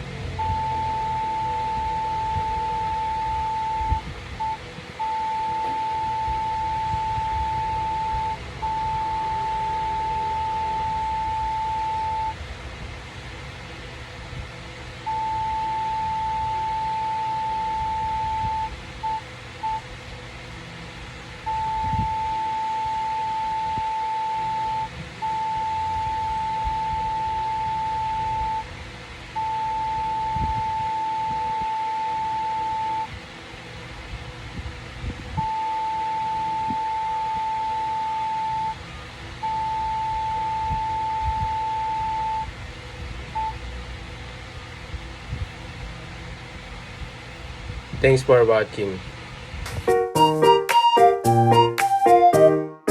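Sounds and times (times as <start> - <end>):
morse code beeps: 0.3 - 12.4, 15.1 - 19.8, 21.5 - 28.6, 29.4 - 33.1, 35.4 - 38.8, 39.4 - 42.5, 43.4 - 43.6, 49.9 - 52.9.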